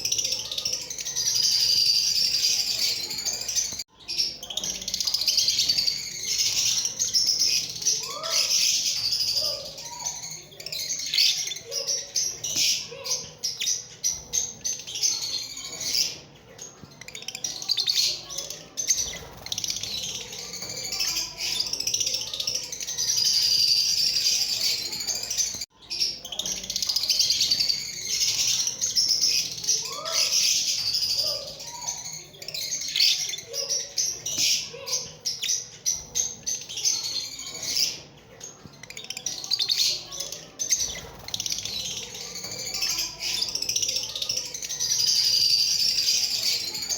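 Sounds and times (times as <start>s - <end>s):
lovebirds chirping: 0.0s - 46.9s.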